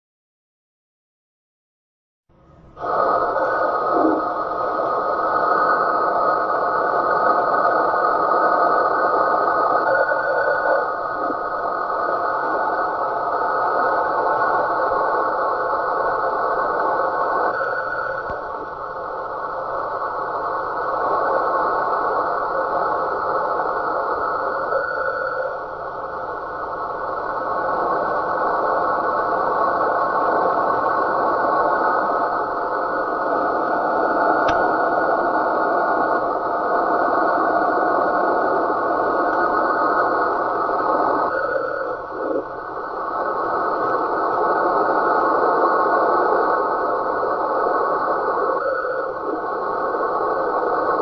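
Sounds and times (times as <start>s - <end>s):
radio receiver rushing noise: 2.3s - 51.0s.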